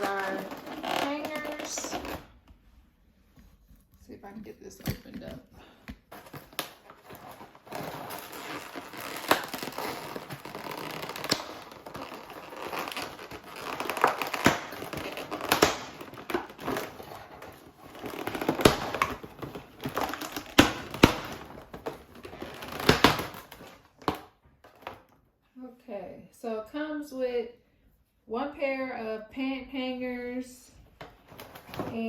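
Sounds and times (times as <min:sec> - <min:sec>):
packaging crinkling and rustling: 0:00.0 - 0:02.3, 0:06.0 - 0:25.2, 0:31.0 - 0:32.0.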